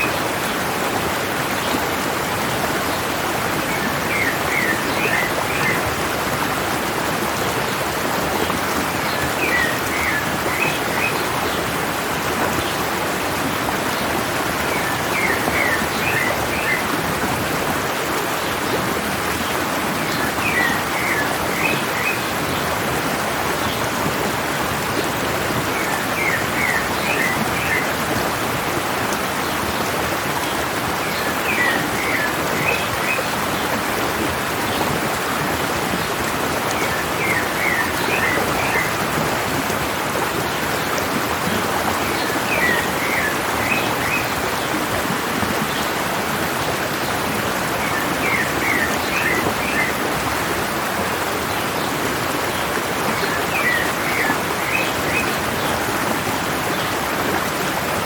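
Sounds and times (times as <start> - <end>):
stream water running: 0.0 - 58.0.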